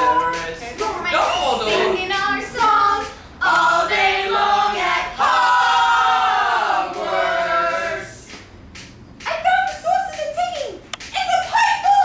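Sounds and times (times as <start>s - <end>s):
voices singing together: 0.0s - 8.5s.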